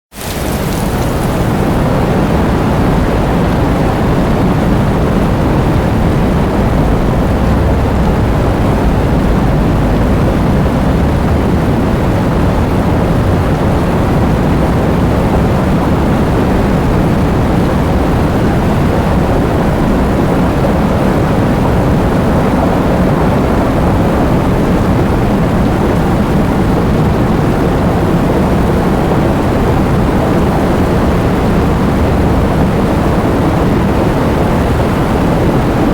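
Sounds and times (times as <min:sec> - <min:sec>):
heavy rain: 0:00.1 - 0:35.9
wind: 0:00.1 - 0:35.9
deep low rumble: 0:00.7 - 0:27.1.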